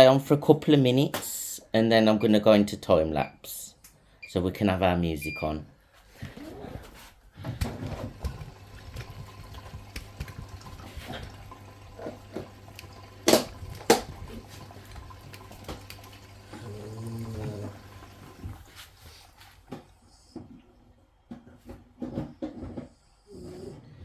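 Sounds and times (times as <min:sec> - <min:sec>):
water running into washing machine: 0:07.5 - 0:21.4.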